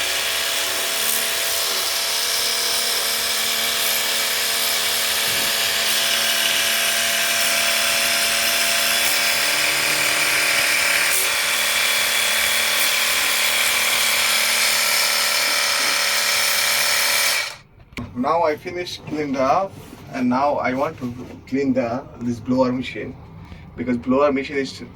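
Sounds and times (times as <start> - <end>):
pressure washer motor hum: 0.0 - 17.6.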